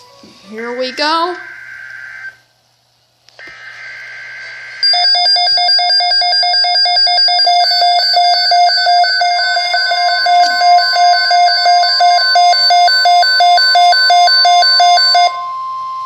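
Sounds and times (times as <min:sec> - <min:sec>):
screeching digital data tones: 0:00.5 - 0:02.5
steady warning alarm tone: 0:00.5 - 0:02.5, 0:03.4 - 0:16.0
rapid pulsing beeps: 0:03.6 - 0:16.0.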